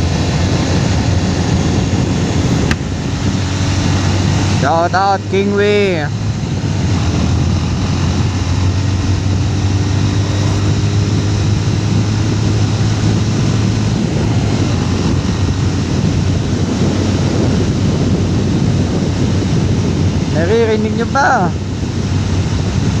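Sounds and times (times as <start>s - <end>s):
motorcycle engine hum: 0.0s - 23.0s
road noise: 0.0s - 23.0s
wind over helmet microphone: 0.0s - 23.0s.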